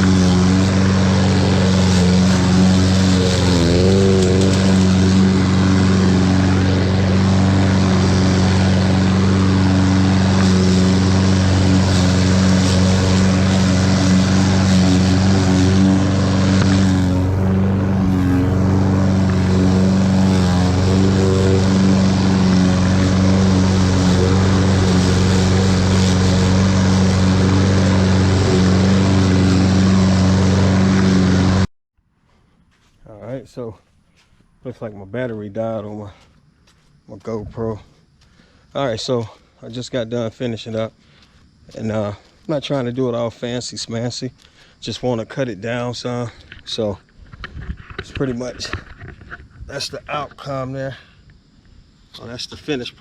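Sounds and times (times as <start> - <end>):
blade cutting grass: 0.0 - 31.7
lawn mower engine running: 0.0 - 31.7.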